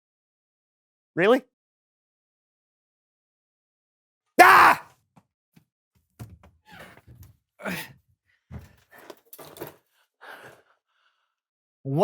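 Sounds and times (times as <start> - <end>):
man sighing and grunting: 4.4 - 4.8, 7.6 - 7.9.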